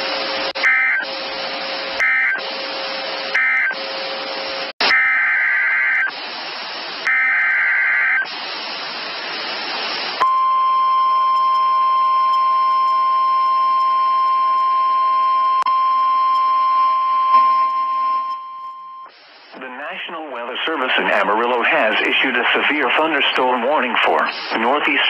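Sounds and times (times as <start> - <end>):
steady single-pitch alarm tone: 0.6 - 6.2, 7.0 - 8.3, 10.2 - 19.1
data bursts: 2.0 - 2.5, 3.3 - 3.8
radio hiss: 5.9 - 10.2, 19.1 - 25.0.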